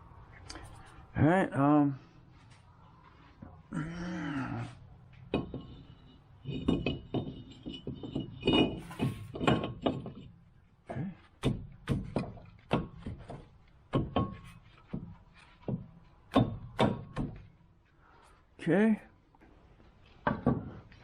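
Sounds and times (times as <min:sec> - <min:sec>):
knocks and clunks of hand tools: 0:05.1 - 0:17.6, 0:20.0 - 0:21.0.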